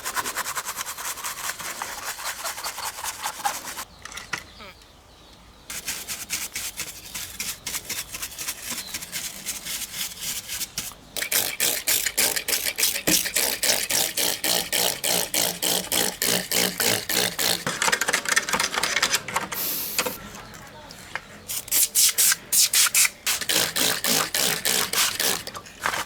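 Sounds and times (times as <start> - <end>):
scrubbing on a model car: 0.0 - 3.9, 5.7 - 26.0.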